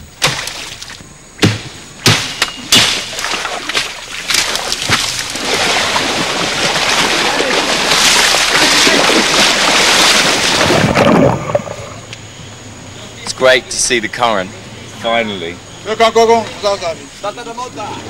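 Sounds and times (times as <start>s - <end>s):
water splashing around boat: 2.8s - 12.1s.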